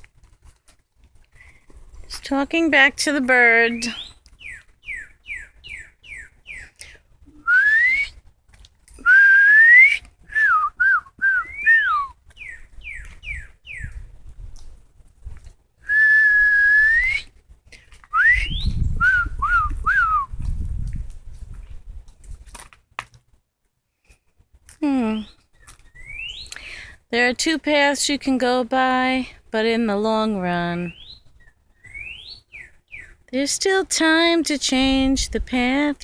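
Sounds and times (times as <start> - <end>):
songbird chirping: 2.1 - 7.6, 11.2 - 14.1, 24.9 - 26.8, 30.1 - 34.9
person whistling: 7.4 - 8.1, 9.0 - 12.1, 15.9 - 17.3, 18.1 - 20.4.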